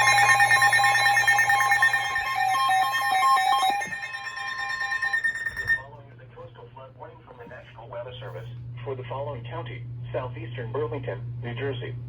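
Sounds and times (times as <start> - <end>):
electronic alert tones: 0.0 - 5.8
fast buzzing pattern: 0.0 - 5.8.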